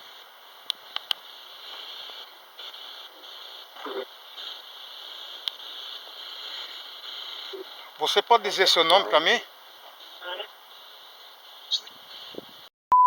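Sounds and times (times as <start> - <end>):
radio static sweeping: 0.0 - 12.7
sharp clicks: 0.6 - 1.3, 5.4 - 5.7.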